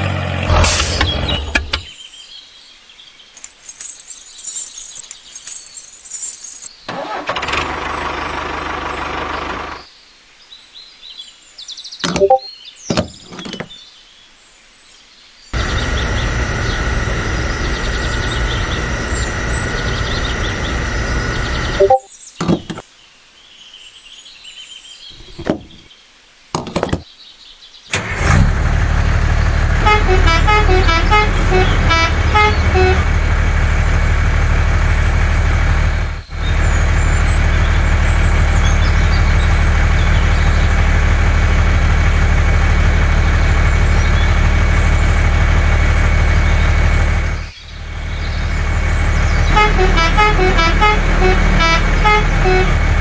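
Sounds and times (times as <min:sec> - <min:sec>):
truck engine running: 0:00.0 - 0:01.9, 0:06.9 - 0:09.8, 0:15.6 - 0:22.0, 0:28.0 - 0:53.0
musical horn tune: 0:21.7 - 0:22.0, 0:29.8 - 0:33.2, 0:49.4 - 0:53.0.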